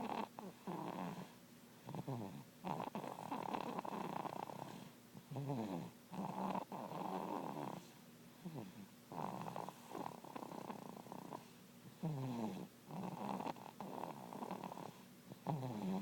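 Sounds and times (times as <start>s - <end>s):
person snoring: 12.0s - 16.0s.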